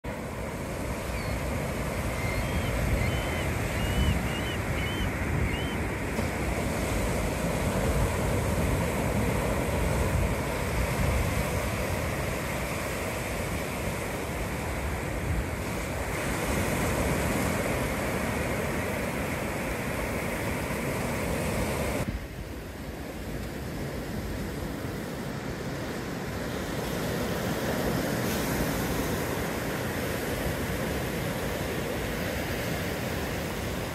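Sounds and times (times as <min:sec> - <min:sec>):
ocean surf rushing: 0:00.1 - 0:33.9
bird chirps: 0:02.1 - 0:05.8.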